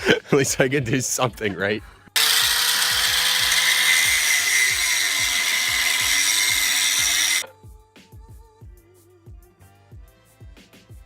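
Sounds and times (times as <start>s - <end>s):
background music with steady beat: 0.0s - 11.0s
electric drill boring metal: 2.2s - 7.5s.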